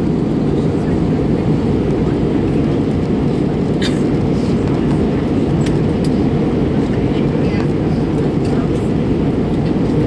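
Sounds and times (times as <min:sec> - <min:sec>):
airliner cabin rumble: 0:00.0 - 0:10.0.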